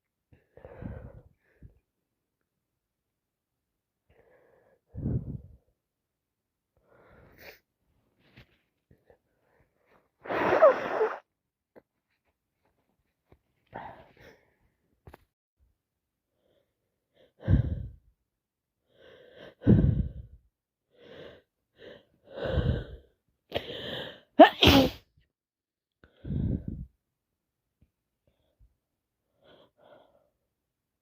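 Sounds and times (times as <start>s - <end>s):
woman breathing in: 0.4s - 1.8s, 17.3s - 18.0s, 18.9s - 20.4s, 21.0s - 24.3s, 26.1s - 26.9s
woman sneezing: 10.3s - 11.2s, 24.4s - 25.1s.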